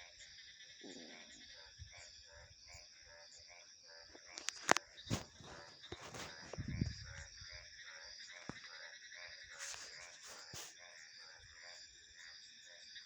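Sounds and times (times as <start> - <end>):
frogs croaking: 0.0 - 13.0
insects trilling: 0.0 - 13.0.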